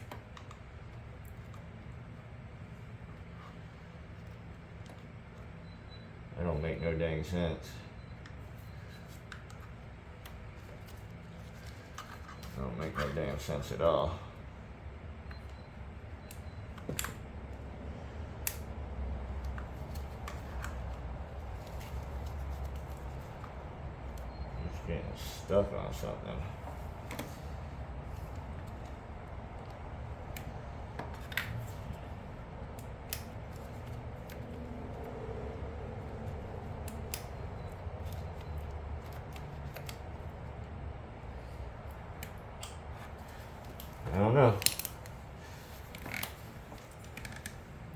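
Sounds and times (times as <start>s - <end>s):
low steady hum: 0.0s - 47.9s
light clicks and taps of parts: 41.8s - 47.6s.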